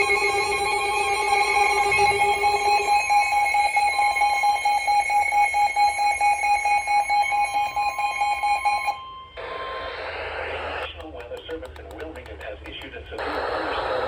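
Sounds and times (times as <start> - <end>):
weather radio alert alarms: 0.0 - 9.8
rapidly pulsing beep: 0.0 - 10.0.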